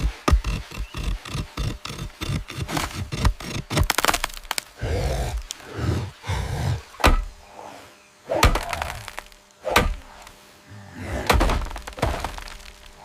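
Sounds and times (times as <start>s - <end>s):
heavy cracking thuds: 11.2s - 13.0s.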